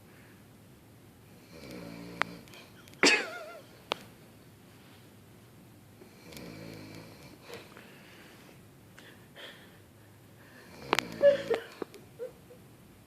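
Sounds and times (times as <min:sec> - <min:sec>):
woman snoring: 0:01.4 - 0:02.4, 0:10.6 - 0:11.8.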